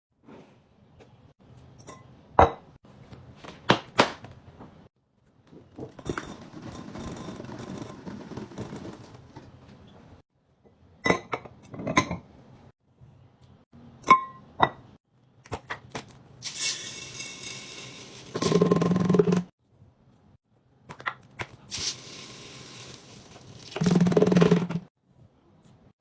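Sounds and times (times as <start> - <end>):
kitchenware clinking and knocking: 5.6 - 9.6, 18.1 - 19.5, 21.8 - 24.9.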